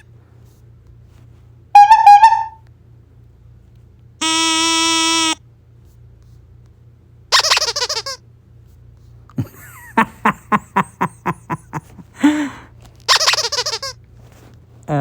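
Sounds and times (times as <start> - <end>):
buzzy horn blast: 1.7 - 2.6, 4.2 - 5.4
warbling honk: 1.7 - 2.6, 4.2 - 5.4.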